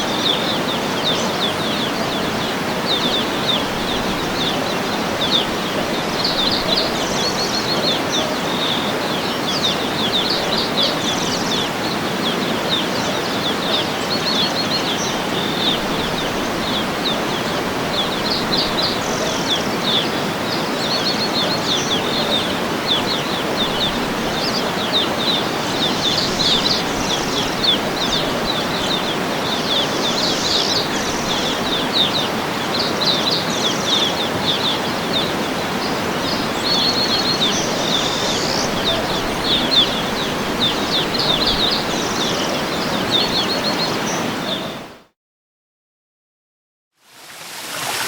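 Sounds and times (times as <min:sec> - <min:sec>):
small birds chirping: 0:00.0 - 0:44.8
waterfall rushing: 0:47.1 - 0:48.0.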